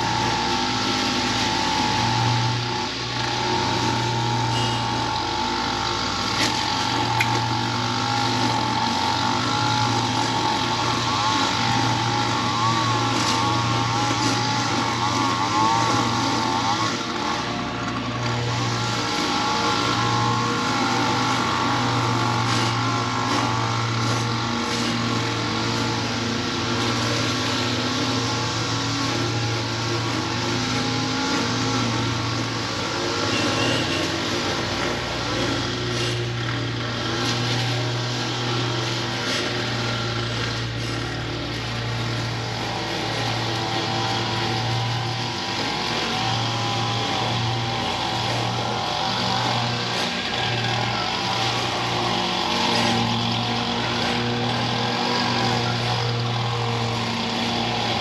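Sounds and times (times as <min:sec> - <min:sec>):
lawn mower engine cutting grass: 0:00.0 - 0:58.0.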